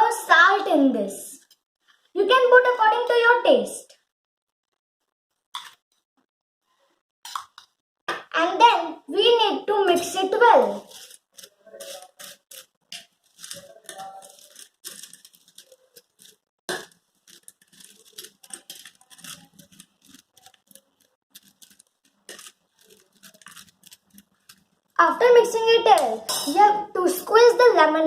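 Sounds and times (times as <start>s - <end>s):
spoon stirring salad in bowl: 10.8s - 24.9s.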